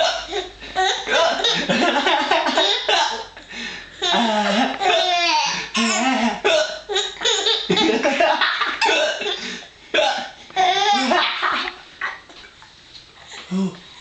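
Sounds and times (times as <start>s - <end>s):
baby laughing: 4.0s - 6.1s, 6.9s - 8.9s, 10.6s - 12.3s.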